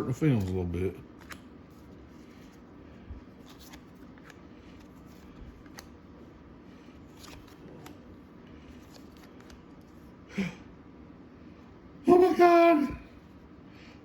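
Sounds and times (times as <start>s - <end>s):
trading cards rustling and clicking: 0.2s - 6.1s, 6.8s - 10.0s.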